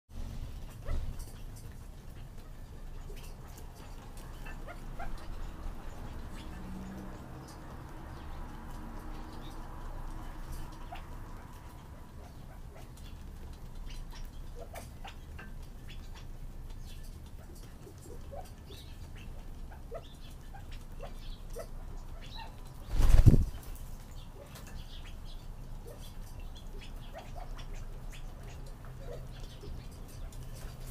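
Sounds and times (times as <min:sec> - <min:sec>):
quails chirping faintly: 0:00.3 - 0:30.9
small ticks: 0:00.7 - 0:30.9
flapping wings whirr: 0:22.8 - 0:23.8.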